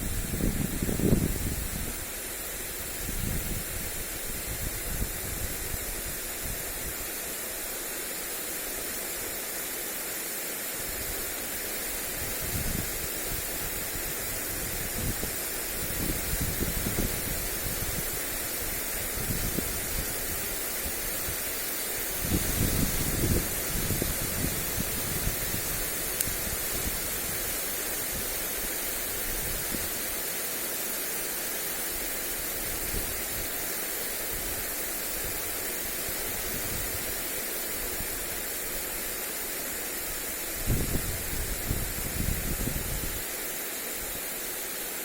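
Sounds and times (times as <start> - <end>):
wind buffeting microphone: 0.0 - 2.1, 12.2 - 21.5, 22.1 - 27.5, 40.5 - 43.2
sprinkler spraying water: 0.0 - 45.0.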